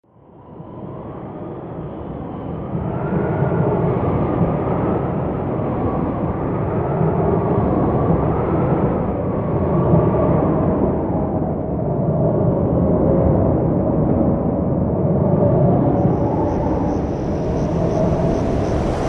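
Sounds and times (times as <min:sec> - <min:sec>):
rolling thunder rumble: 0:15.4 - 0:19.0.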